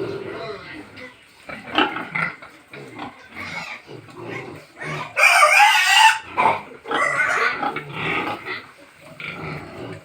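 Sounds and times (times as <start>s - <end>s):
pigs grunting: 0.0s - 10.0s
pig shrill squeals: 4.8s - 7.6s.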